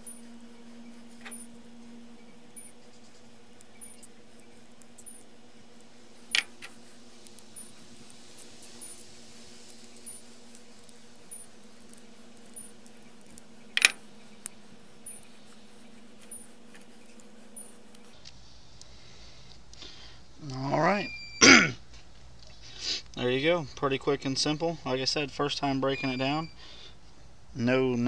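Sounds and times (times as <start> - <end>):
steady low hum: 0.0 - 28.0
multitool metal clicks and taps: 9.7 - 15.3.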